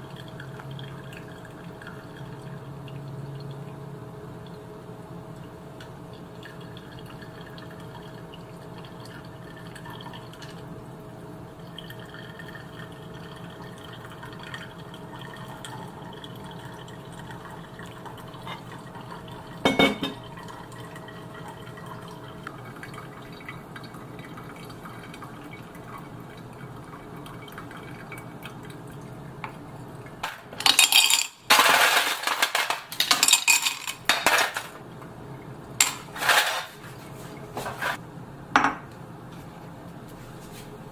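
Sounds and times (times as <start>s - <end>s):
faint liquid sounds: 0.0s - 30.3s
low steady hum: 0.0s - 40.9s
dish clink: 19.6s - 20.2s
dishes and cutlery clattering: 19.7s - 20.2s, 30.6s - 34.8s.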